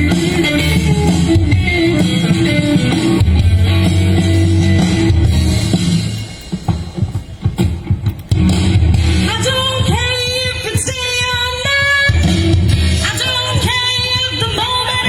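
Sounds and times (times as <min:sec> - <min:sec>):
live blues band playing: 0:00.0 - 0:15.0
person singing: 0:09.2 - 0:15.0.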